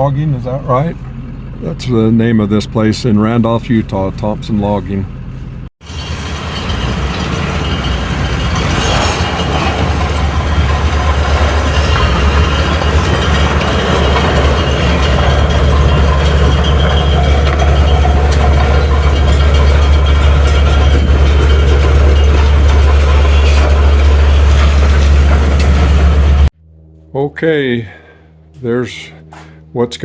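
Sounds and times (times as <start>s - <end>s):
heavy machinery rattling: 5.8s - 26.5s.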